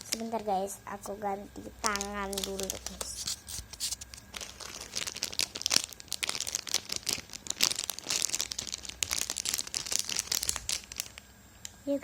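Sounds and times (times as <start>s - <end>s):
plastic wrapping crinkling: 1.7s - 11.3s.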